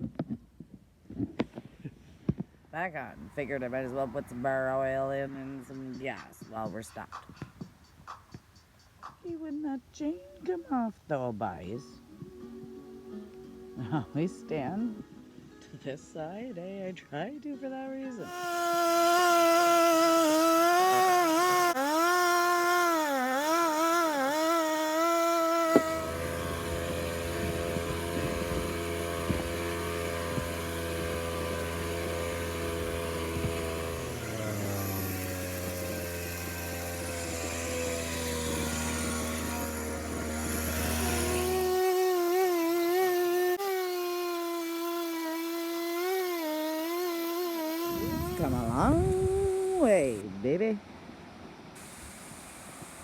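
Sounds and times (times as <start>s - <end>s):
chainsaw cutting wood: 18.2s - 50.2s, 51.8s - 53.0s
low steady drone: 18.2s - 50.2s.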